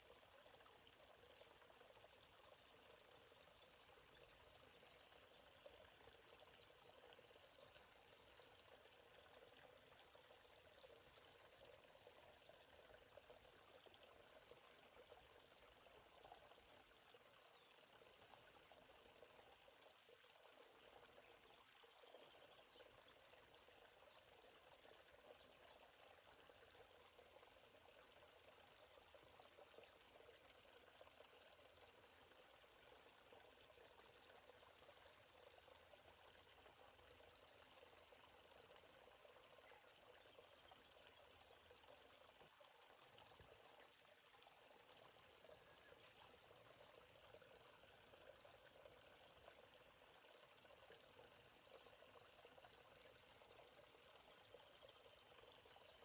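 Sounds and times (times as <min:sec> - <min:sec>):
babbling stream: 0:00.0 - 0:56.0
high-pitched insect chorus: 0:00.0 - 0:56.0.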